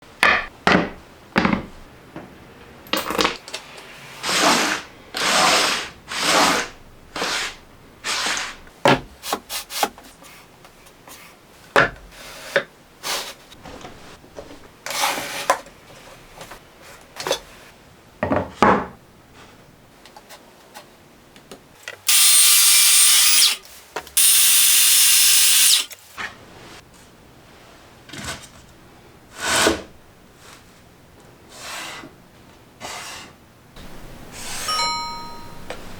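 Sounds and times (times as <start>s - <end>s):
small power tool whine: 22.1s - 23.6s, 24.2s - 26.0s
tool scraping wood: 22.1s - 23.6s, 24.2s - 26.0s.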